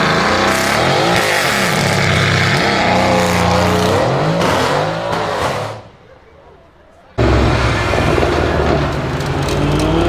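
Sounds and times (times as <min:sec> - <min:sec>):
car engine revving: 0:00.0 - 0:05.8, 0:07.2 - 0:10.0.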